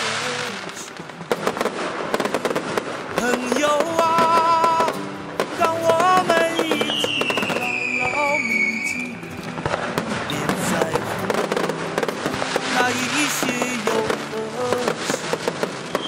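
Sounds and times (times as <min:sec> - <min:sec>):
fireworks and firecrackers banging: 0:00.0 - 0:16.0
music playing: 0:00.0 - 0:16.0
high falling whistle: 0:06.6 - 0:09.3.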